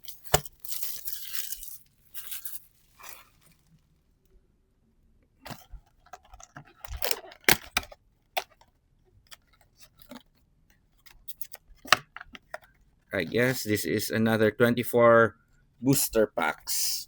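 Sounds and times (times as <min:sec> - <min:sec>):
plastic wrapping crinkling: 0:00.0 - 0:04.0.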